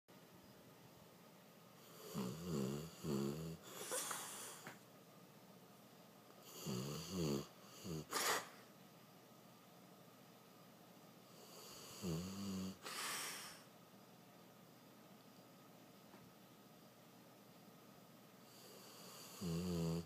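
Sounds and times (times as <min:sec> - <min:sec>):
dog snoring: 0:01.8 - 0:04.6, 0:06.4 - 0:08.5, 0:11.3 - 0:13.6, 0:18.4 - 0:20.0.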